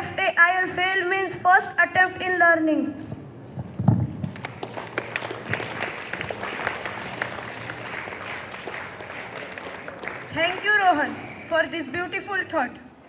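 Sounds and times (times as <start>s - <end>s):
children clapping: 4.3s - 11.2s.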